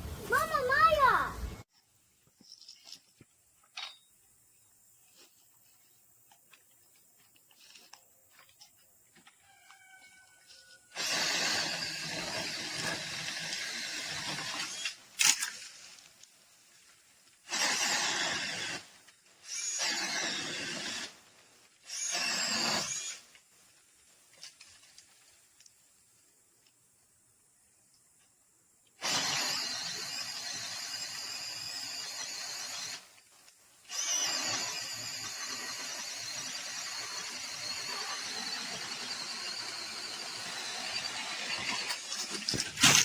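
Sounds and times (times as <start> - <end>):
battery chainsaw running: 33.9 - 43.0.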